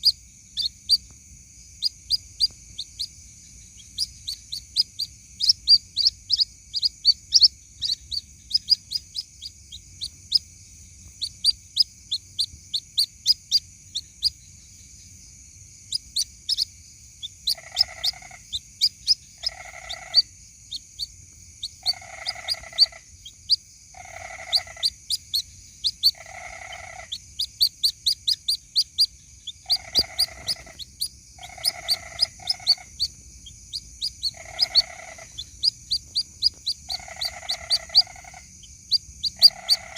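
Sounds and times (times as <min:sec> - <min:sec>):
bird chick peeping: 0:00.0 - 0:15.2, 0:15.8 - 0:39.9.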